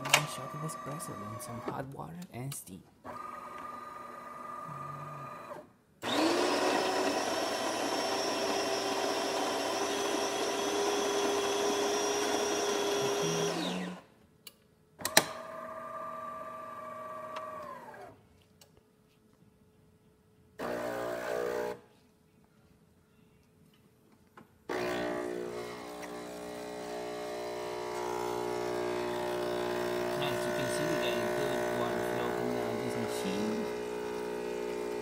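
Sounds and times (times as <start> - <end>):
brew unit motor humming: 3.1 - 14.0, 24.7 - 35.0
motor hum: 3.1 - 14.0, 24.7 - 35.0
coffee grinder grinding beans: 6.1 - 14.0, 24.7 - 35.0.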